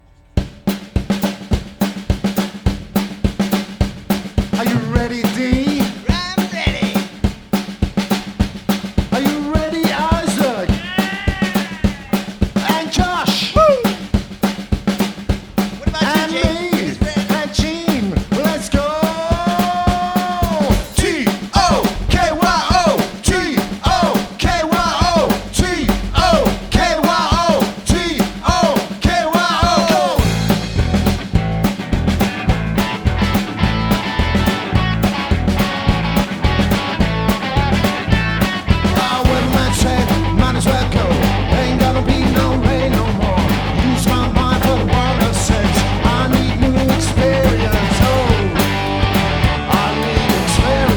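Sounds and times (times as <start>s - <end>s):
guitar: 0.0s - 8.4s, 9.1s - 50.9s
drums: 0.0s - 50.9s
rock band playing live: 0.4s - 50.9s
person singing: 4.6s - 7.1s, 9.1s - 14.1s, 15.8s - 30.4s, 38.5s - 50.9s.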